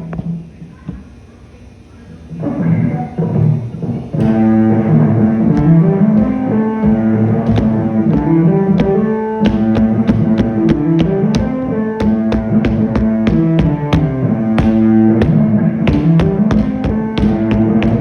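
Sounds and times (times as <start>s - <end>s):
bass line: 4.2s - 18.0s
plucked string notes: 4.2s - 18.0s
sharp percussion beat: 4.2s - 18.0s.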